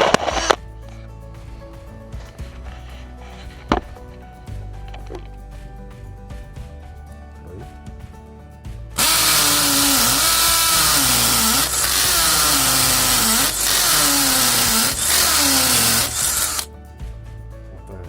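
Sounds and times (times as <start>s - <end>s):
background music: 0.0s - 18.0s
cordless drill running under load: 9.0s - 16.7s.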